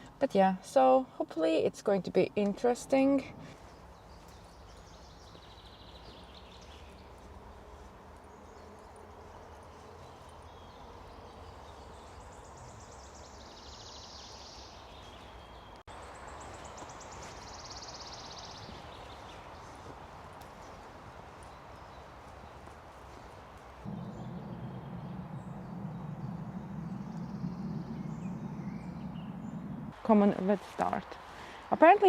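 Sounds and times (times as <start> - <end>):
low background hum: 23.8 - 32.0
songbird trilling: 23.9 - 30.0.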